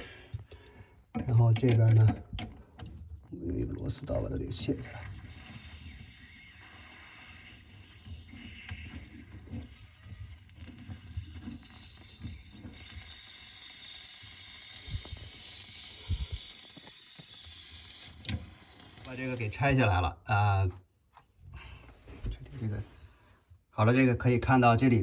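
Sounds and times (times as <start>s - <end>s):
screwdriver handling noises: 1.1s - 3.3s.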